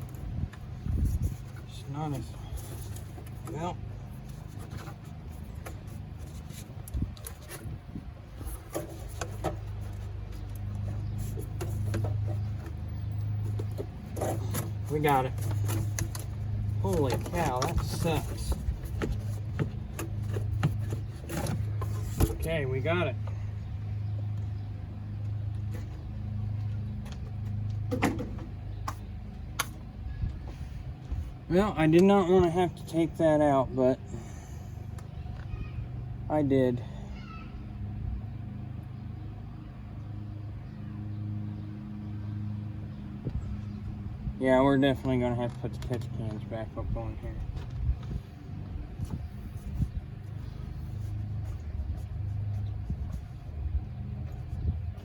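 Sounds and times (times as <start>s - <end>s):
steady low hum: 0.0s - 55.0s
clicks and scraping of part: 2.5s - 22.5s.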